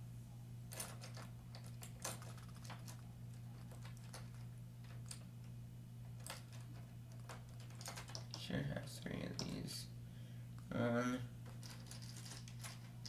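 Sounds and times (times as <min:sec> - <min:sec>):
steady low hum: 0:00.0 - 0:13.0
plastic pieces clicking and rattling: 0:00.7 - 0:03.0, 0:03.6 - 0:05.2, 0:06.2 - 0:08.4, 0:11.4 - 0:12.9.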